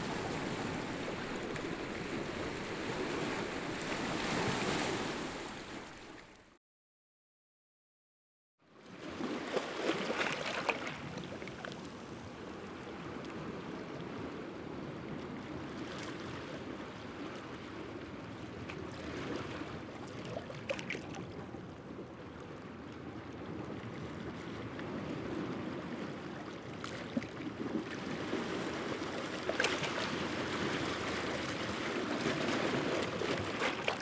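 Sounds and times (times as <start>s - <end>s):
sea waves washing against rocks: 0.0s - 6.1s, 27.8s - 34.0s
water splashes: 0.0s - 6.5s, 9.0s - 11.9s, 18.6s - 21.7s, 26.5s - 34.0s.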